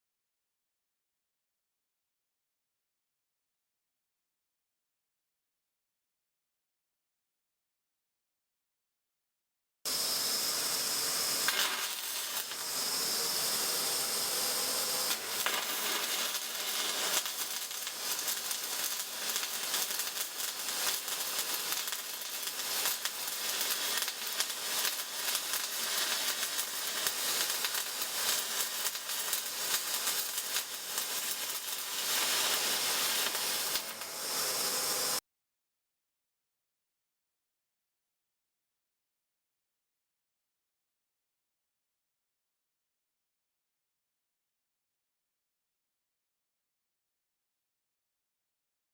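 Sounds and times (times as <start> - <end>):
welding arc crackling hiss: 9.9 - 35.2.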